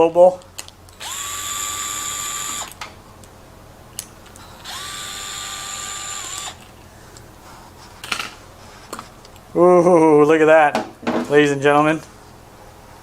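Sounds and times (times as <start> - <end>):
cordless power driver whining: 0.9 - 2.8, 4.2 - 6.7.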